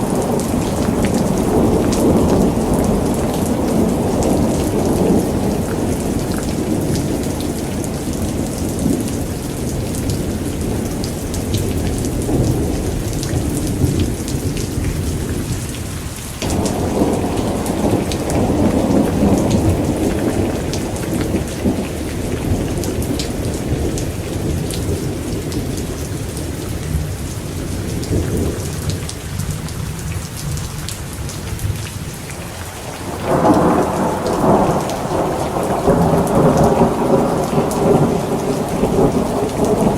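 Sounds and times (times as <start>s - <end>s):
heavy rain: 0.0s - 39.9s
rolling thunder: 16.4s - 29.6s, 32.9s - 39.9s.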